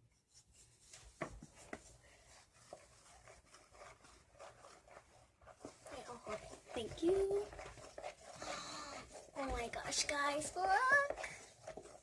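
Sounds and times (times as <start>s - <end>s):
utensil stirring slime in bowl: 0.2s - 12.0s.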